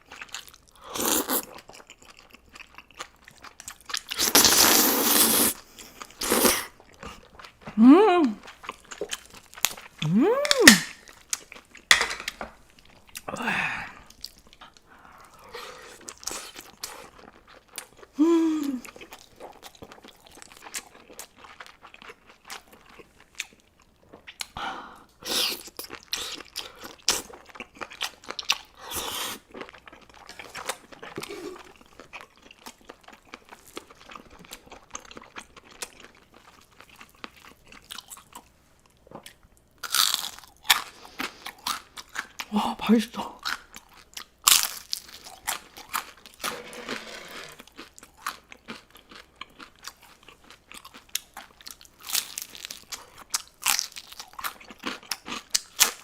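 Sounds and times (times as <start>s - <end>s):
person chewing crunchy food: 0.0s - 7.8s, 8.4s - 24.6s, 25.2s - 42.5s, 43.4s - 56.0s.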